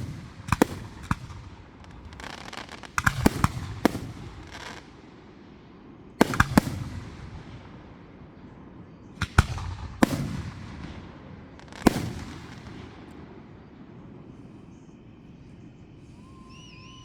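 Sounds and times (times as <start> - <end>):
fireworks bangs with rumble: 0.0 - 4.9, 6.2 - 7.9, 9.1 - 13.6.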